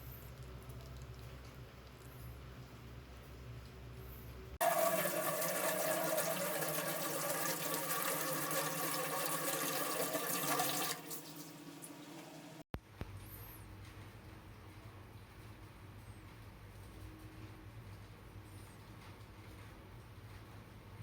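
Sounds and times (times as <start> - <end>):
water running from a tap: 4.6 - 12.6.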